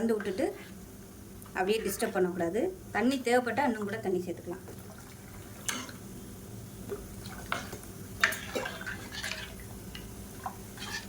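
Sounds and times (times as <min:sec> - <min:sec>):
liquid splashing in a pan: 0:07.2 - 0:09.8.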